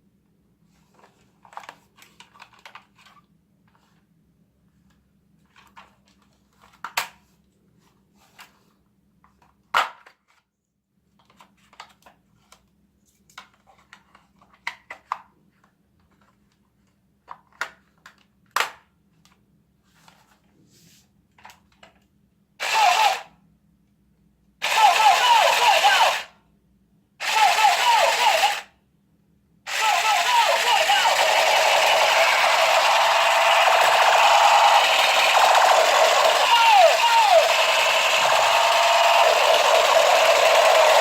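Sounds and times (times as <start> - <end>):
plastic toy rifle clicks and knocks: 1.4 - 3.2, 6.6 - 7.2, 9.3 - 10.4, 11.2 - 12.7, 13.3 - 15.3, 17.2 - 19.4
loud electronic burst: 27.2 - 28.6, 29.7 - 41.0.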